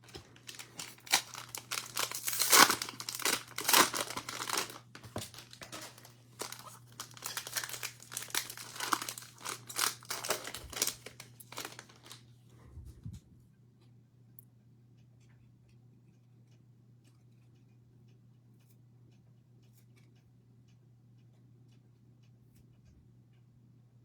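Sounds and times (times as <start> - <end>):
cellophane wrapper tearing and crinkling: 0.0 - 12.2.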